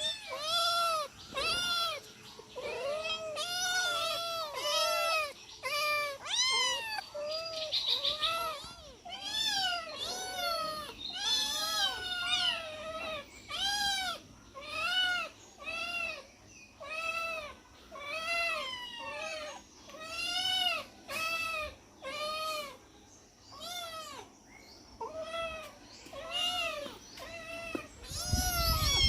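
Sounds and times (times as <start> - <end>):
cat meowing: 2.6 - 16.2, 25.0 - 29.0.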